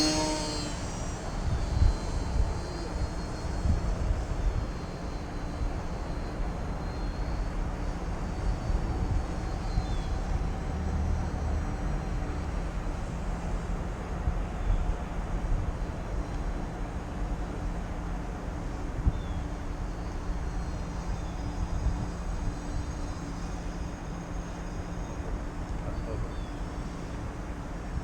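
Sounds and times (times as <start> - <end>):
wind on microphone: 0.0 - 11.0, 20.2 - 28.0
model plane motor and propeller: 0.0 - 28.0.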